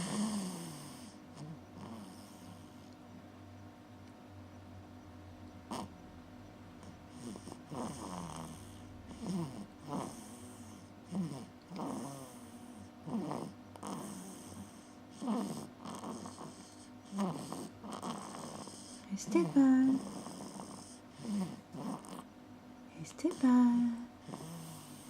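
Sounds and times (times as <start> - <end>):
person snoring: 0.0 - 2.6, 5.7 - 5.9, 7.1 - 22.3, 23.2 - 25.0.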